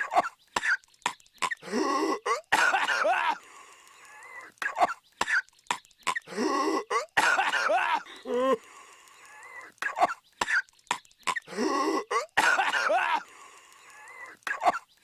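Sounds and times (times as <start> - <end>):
cartoon character coughing: 1.4 - 3.4, 4.6 - 5.4, 6.1 - 8.5, 9.8 - 10.6, 11.3 - 13.2, 14.5 - 14.9.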